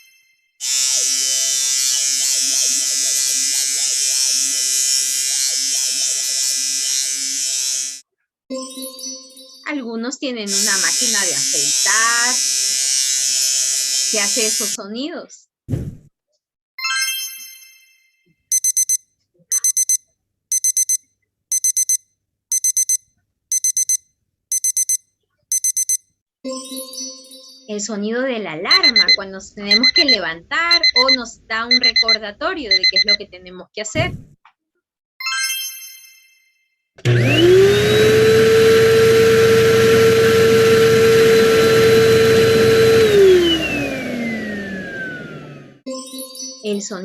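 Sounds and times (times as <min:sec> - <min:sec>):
electric shaver buzzing: 0:00.6 - 0:08.0, 0:10.5 - 0:14.8, 0:37.1 - 0:45.8
digital alarm clock beeping: 0:18.5 - 0:26.0, 0:28.7 - 0:33.2.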